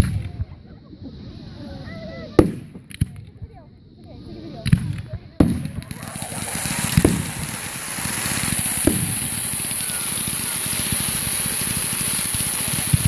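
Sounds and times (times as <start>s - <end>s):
fireworks crackling hiss: 0.0s - 13.0s
firework boom: 5.4s - 13.0s.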